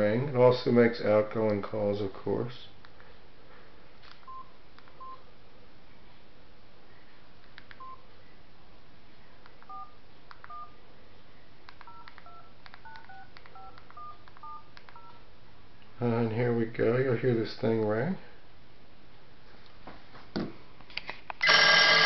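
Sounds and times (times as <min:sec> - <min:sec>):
keypad beeps: 0:07.8 - 0:08.0, 0:09.7 - 0:10.8, 0:11.8 - 0:15.2.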